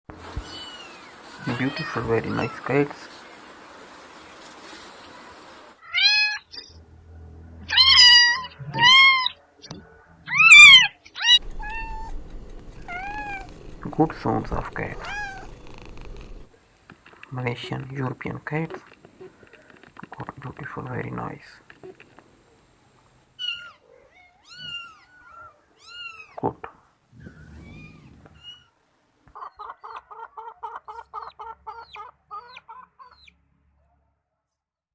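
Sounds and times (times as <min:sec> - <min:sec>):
kitten meowing: 0:00.4 - 0:02.6, 0:05.8 - 0:06.5, 0:07.7 - 0:09.4, 0:10.3 - 0:16.5, 0:27.3 - 0:28.7
animal clucking calls: 0:10.6 - 0:16.5, 0:29.3 - 0:33.4.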